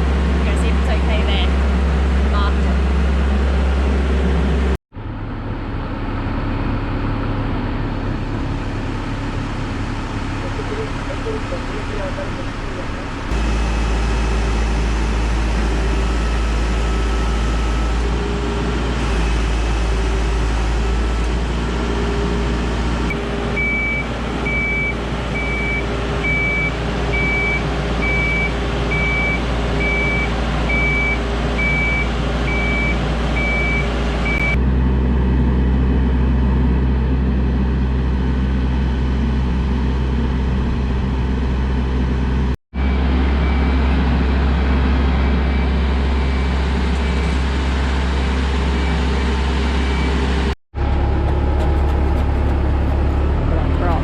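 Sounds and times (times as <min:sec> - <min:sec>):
travel lift engine running: 0:00.0 - 0:54.0
warning alarm beeping: 0:23.1 - 0:34.6.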